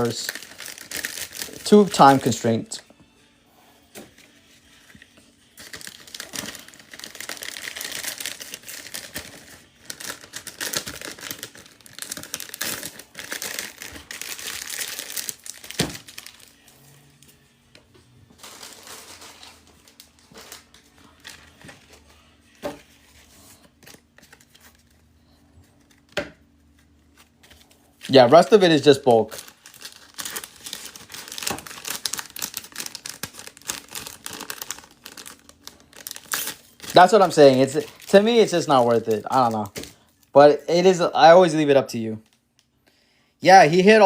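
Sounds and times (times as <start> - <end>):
plastic packaging crinkling and tearing: 0.0 - 2.5, 4.9 - 16.7, 18.4 - 22.2, 26.8 - 40.3.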